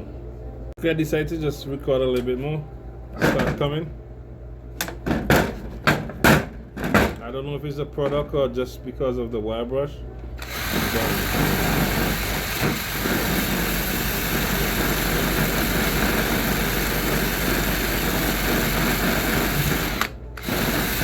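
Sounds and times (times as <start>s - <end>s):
wire brush whirring on metal: 10.4s - 21.0s.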